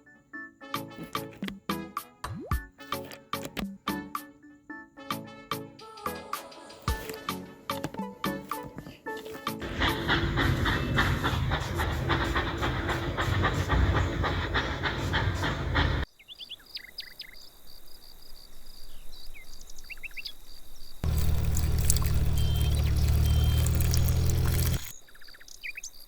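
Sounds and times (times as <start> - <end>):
small machine clattering: 21.0 - 24.9
small motor humming: 21.0 - 25.0.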